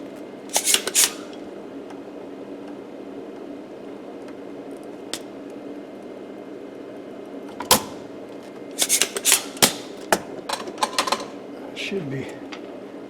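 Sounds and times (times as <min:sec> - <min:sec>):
bench equipment humming: 0:00.0 - 0:13.0
tools clicking and knocking: 0:08.8 - 0:11.3.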